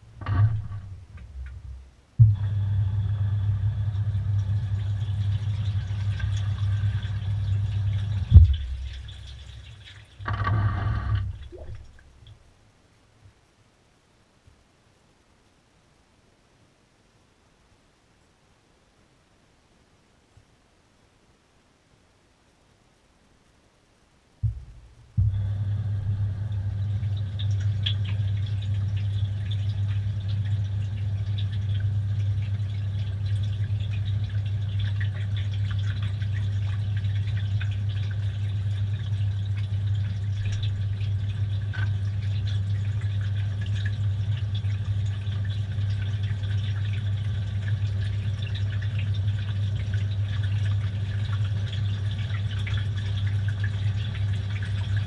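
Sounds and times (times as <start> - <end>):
washing machine humming: 0.0 - 12.3, 24.4 - 55.0
water running and dripping: 3.9 - 12.6, 24.4 - 55.0.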